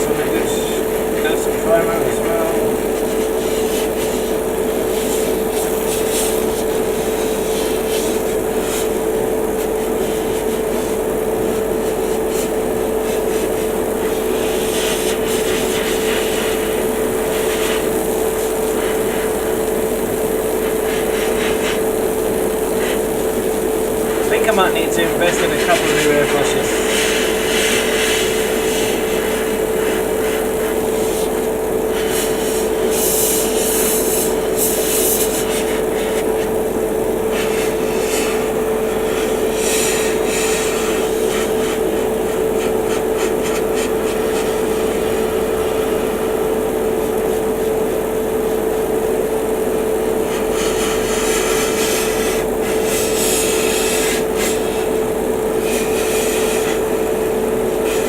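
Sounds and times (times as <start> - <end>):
airbrush spraying hiss: 0.0 - 4.3, 4.9 - 6.8, 7.4 - 9.0, 11.8 - 19.3, 20.6 - 22.1, 22.8 - 23.1, 24.1 - 36.5, 37.3 - 45.2, 50.3 - 54.9, 55.6 - 56.8
compressor humming: 0.0 - 58.0.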